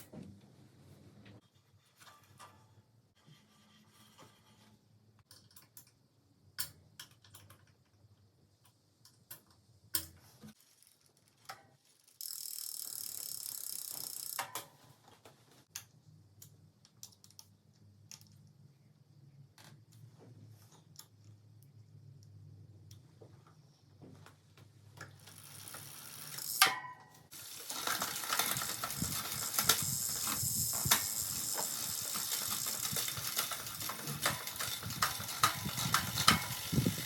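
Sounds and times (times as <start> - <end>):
bicycle parts and tools clicking: 5.2 - 18.6, 24.2 - 37.0.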